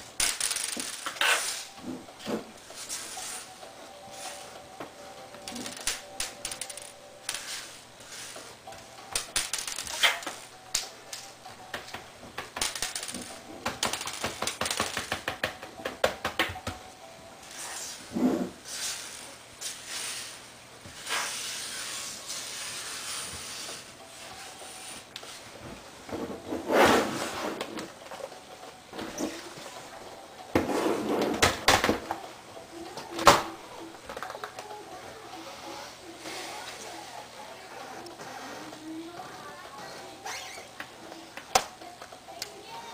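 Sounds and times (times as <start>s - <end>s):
parts clattering: 0.0s - 3.5s, 4.7s - 16.8s
small hard parts clicking and scraping: 0.1s - 3.6s, 5.3s - 16.4s.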